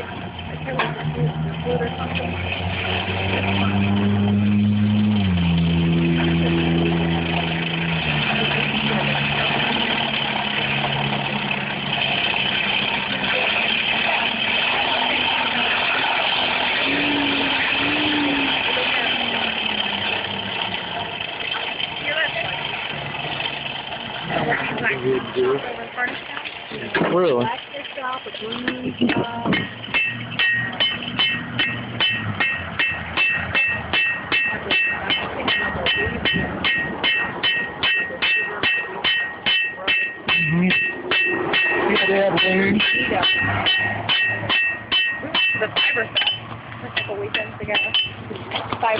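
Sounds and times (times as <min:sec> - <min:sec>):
mechanical motor running: 0:06.1 - 0:25.6
brief low hums: 0:16.9 - 0:18.8
hammer striking iron on anvil: 0:29.1 - 0:46.4, 0:47.0 - 0:48.2.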